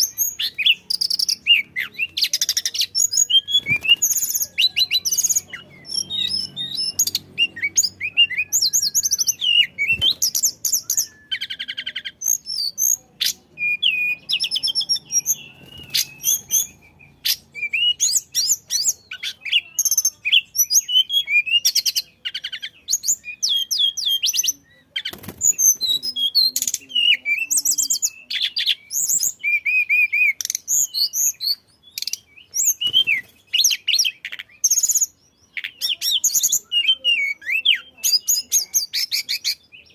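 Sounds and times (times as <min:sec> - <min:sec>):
songbird singing: 0:00.0 - 0:39.9.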